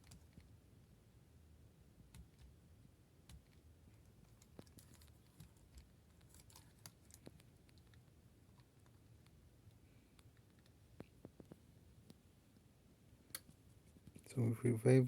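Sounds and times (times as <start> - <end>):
faint light clicks and taps: 3.3 - 8.0.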